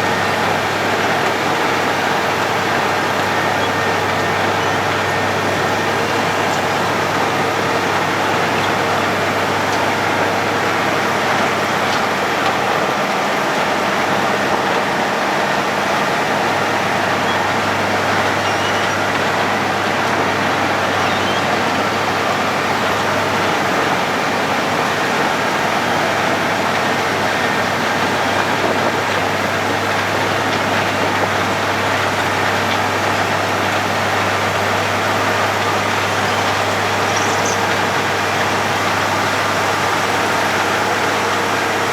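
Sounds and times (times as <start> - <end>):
diesel engine under load: 0.0 - 41.9
milling drum grinding road: 0.0 - 41.9.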